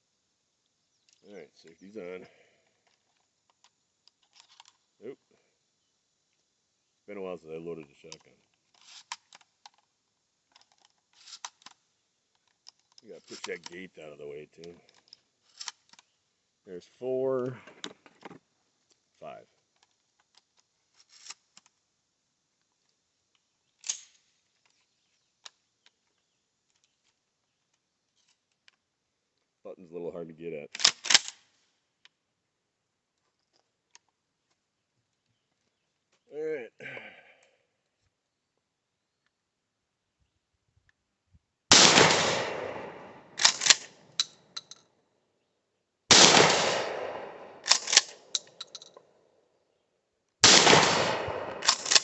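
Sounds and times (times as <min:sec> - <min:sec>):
shotgun metallic clicks: 0:12.4 - 0:13.8, 0:23.3 - 0:24.8, 0:30.7 - 0:32.2, 0:41.7 - 0:44.9, 0:46.1 - 0:49.1, 0:50.4 - 0:52.0
shotgun blasts: 0:41.7 - 0:43.8, 0:46.1 - 0:48.1, 0:50.4 - 0:52.0.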